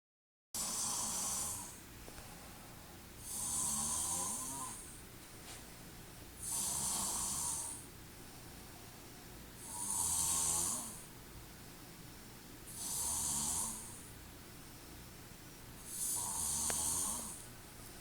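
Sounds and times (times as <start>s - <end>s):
person snoring loudly: 0.6s - 1.8s, 3.2s - 4.9s, 6.4s - 7.8s, 9.6s - 11.0s, 12.8s - 14.0s, 15.9s - 17.4s
quiet breathing: 0.6s - 18.0s.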